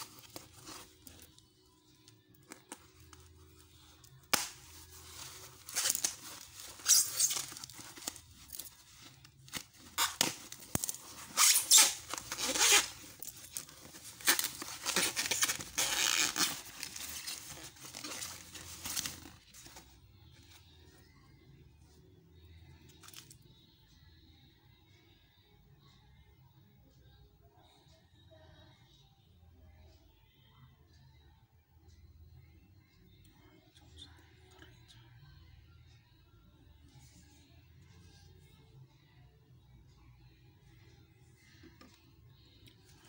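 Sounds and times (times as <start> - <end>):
packaging tearing and rustling: 4.3 - 19.6.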